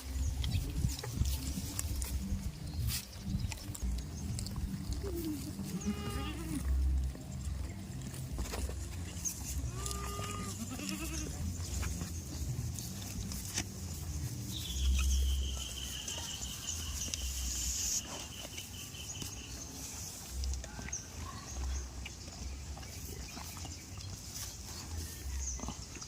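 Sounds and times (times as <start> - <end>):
goat bleating: 5.0 - 6.9, 9.6 - 11.6.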